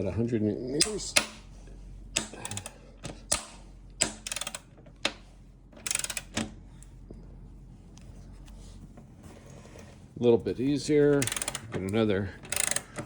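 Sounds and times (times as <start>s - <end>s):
ratchet wrench clicking: 2.2s - 2.7s, 3.3s - 4.7s, 5.8s - 6.5s, 11.2s - 11.7s, 12.5s - 13.0s.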